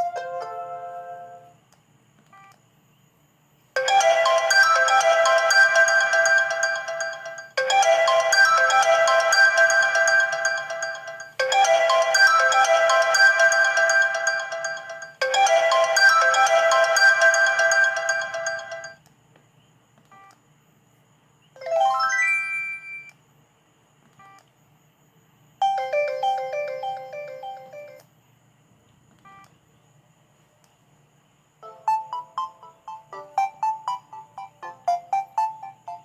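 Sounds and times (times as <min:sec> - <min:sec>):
mobile phone ringtone melody: 0:03.8 - 0:19.0, 0:21.6 - 0:23.1, 0:25.6 - 0:28.0, 0:31.6 - 0:36.0.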